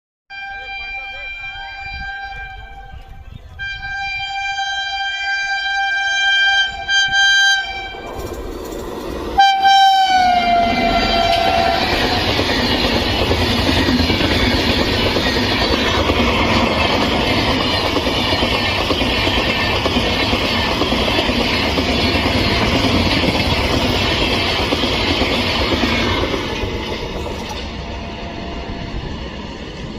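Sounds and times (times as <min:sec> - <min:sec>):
locomotive horn blast: 0:00.3 - 0:08.2, 0:09.4 - 0:12.3
train wheels rumbling on rails: 0:01.1 - 0:29.9.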